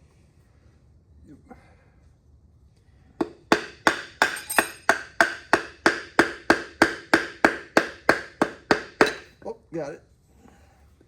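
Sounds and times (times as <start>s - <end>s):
rubber mallet hammering wood: 3.2s - 9.3s.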